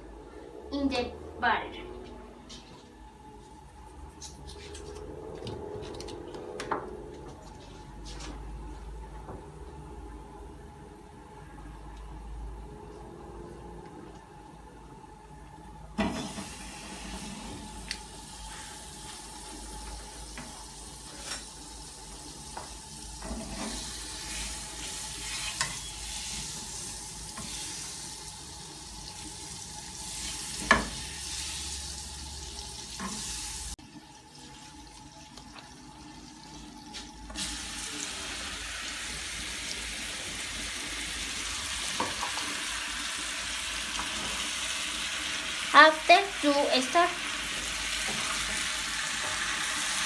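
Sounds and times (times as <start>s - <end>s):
utensil scraping a pan: 23.2s - 26.0s
mushrooms sizzling in a pan: 37.4s - 50.0s.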